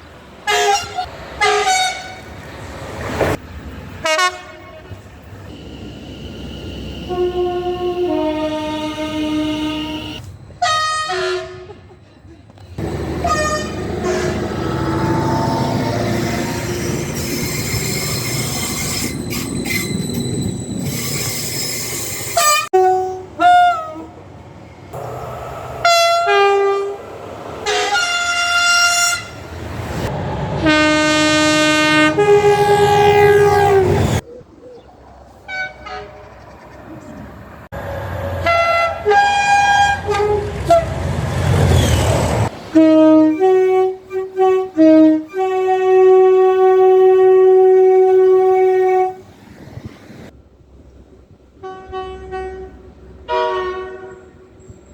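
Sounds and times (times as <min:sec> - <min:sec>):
train wheels rumbling: 0:00.0 - 0:34.2
train horn blasts: 0:00.4 - 0:02.3, 0:04.0 - 0:11.8, 0:12.8 - 0:19.1, 0:22.4 - 0:24.2, 0:25.0 - 0:29.5, 0:30.6 - 0:34.2, 0:35.5 - 0:36.2, 0:38.4 - 0:41.0, 0:42.7 - 0:49.3, 0:51.6 - 0:54.5.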